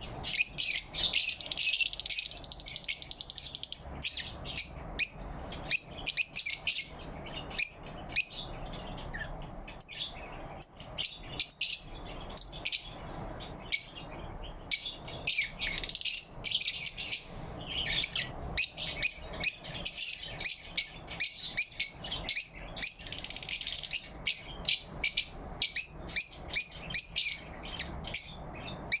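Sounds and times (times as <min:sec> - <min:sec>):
faint low hum: 0:00.0 - 0:29.0
lovebirds chirping: 0:00.0 - 0:29.0.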